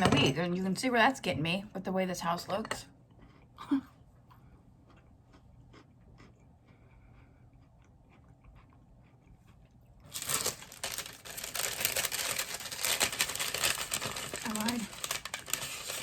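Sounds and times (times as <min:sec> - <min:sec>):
chewing with mouth clicks: 0:03.1 - 0:10.2
loud crinkling and crunching: 0:10.0 - 0:16.0.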